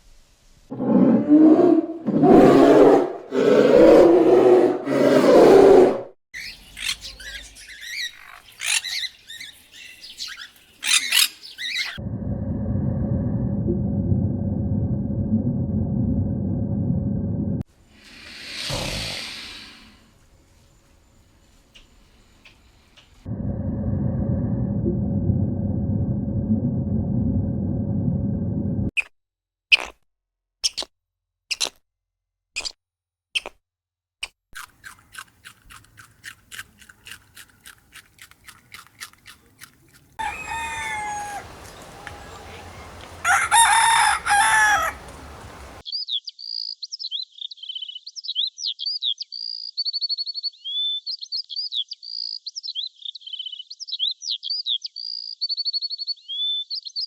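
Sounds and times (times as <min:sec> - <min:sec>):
small bird chirping and trilling: 0:06.4 - 0:12.0, 0:45.8 - 0:57.0
fowl: 0:40.2 - 0:45.8
rooster crowing: 0:40.2 - 0:45.8.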